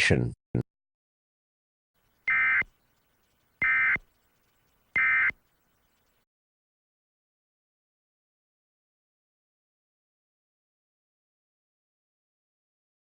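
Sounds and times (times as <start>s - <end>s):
buzzy digital data tones: 2.2s - 6.2s.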